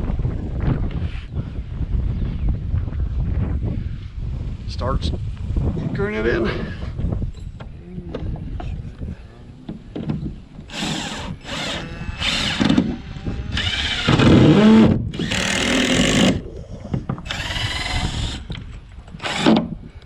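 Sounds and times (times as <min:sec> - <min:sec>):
power drill driving fasteners: 0:10.7 - 0:16.4, 0:17.2 - 0:19.7.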